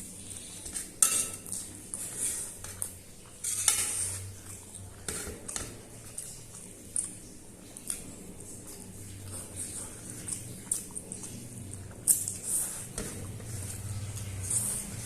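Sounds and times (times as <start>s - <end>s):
cutlery clinking against a dish: 0.6s - 1.7s, 2.6s - 4.2s.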